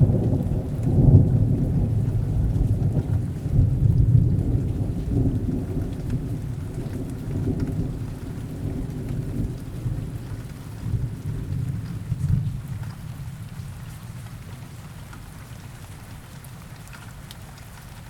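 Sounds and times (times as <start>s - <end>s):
thunder rumbling: 0.0s - 13.2s
steady rain: 0.0s - 18.0s.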